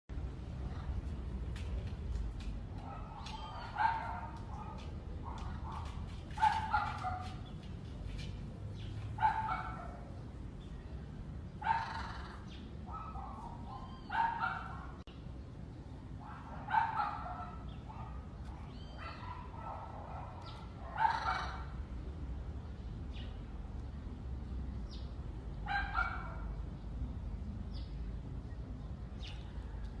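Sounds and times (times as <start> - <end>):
animal harsh calls: 11.7 - 12.5.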